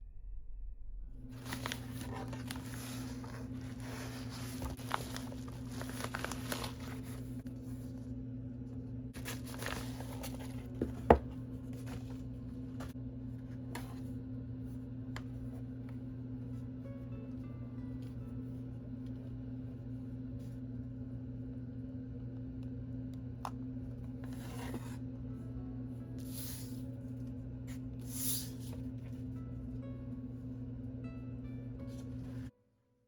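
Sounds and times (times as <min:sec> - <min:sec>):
low electrical hum: 0:00.0 - 0:32.6
packaging rustling: 0:01.4 - 0:07.4, 0:09.2 - 0:11.2.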